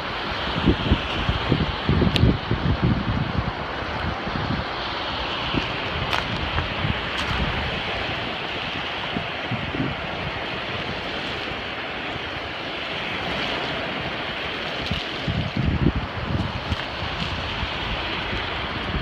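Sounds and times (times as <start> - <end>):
surf washing: 0.0 - 19.0
wind buffeting microphone: 0.0 - 19.0.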